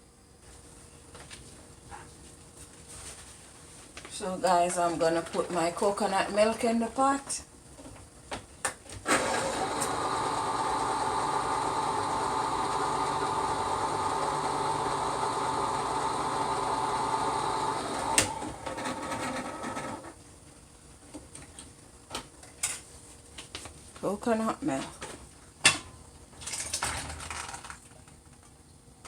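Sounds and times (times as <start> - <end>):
electric can opener humming: 9.1 - 20.2.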